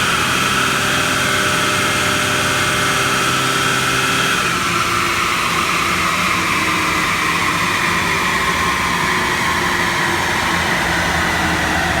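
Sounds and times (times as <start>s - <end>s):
car engine running: 0.0s - 5.2s.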